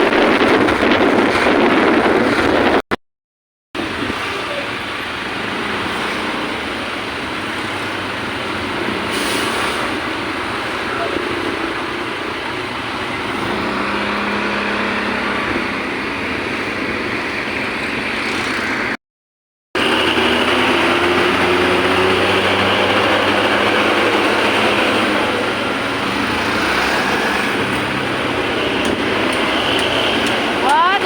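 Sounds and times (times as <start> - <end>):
road traffic: 0.0 - 2.9, 3.8 - 19.0, 19.8 - 31.0
voices: 10.8 - 12.0, 28.8 - 31.0.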